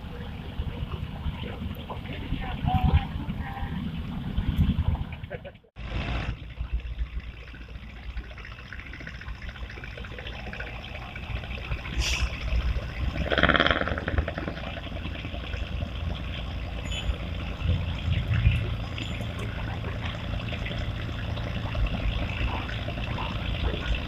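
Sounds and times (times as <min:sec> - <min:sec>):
steady low rumble: 0:00.0 - 0:24.0
water trickling and pouring: 0:05.8 - 0:24.0.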